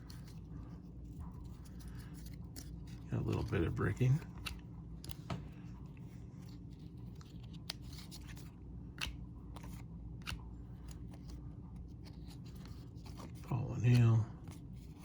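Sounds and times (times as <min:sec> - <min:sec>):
low steady hum: 0:00.0 - 0:15.0
trading cards clicking and rustling: 0:00.0 - 0:15.0.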